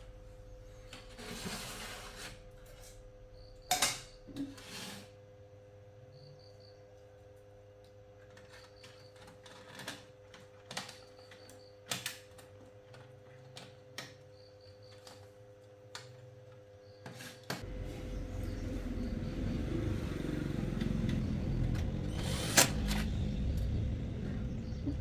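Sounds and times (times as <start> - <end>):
loud low noise: 0.0 - 4.4, 17.6 - 25.0
steady electrical hum: 0.0 - 25.0.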